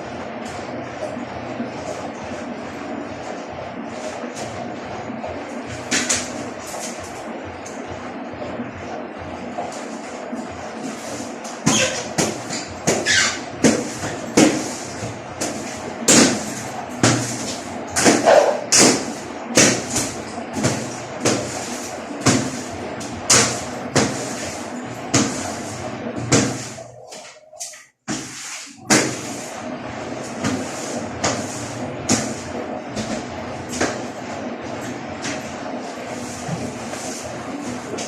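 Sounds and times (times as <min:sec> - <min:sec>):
hard knocks on washing machine: 0:11.6 - 0:24.4, 0:25.0 - 0:26.8, 0:28.0 - 0:29.4, 0:30.3 - 0:34.1.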